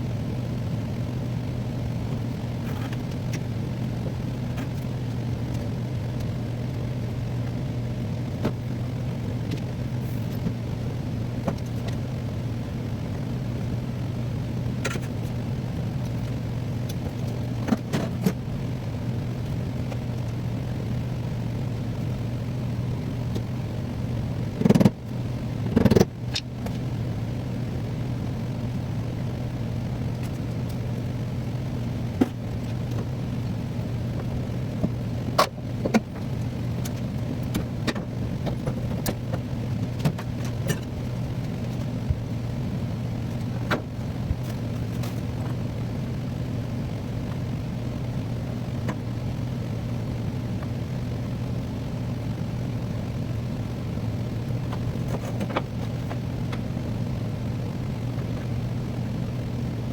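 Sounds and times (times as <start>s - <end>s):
low machine hum: 0.0s - 59.9s
sharp clicks and knocks: 24.6s - 25.0s, 25.7s - 26.8s.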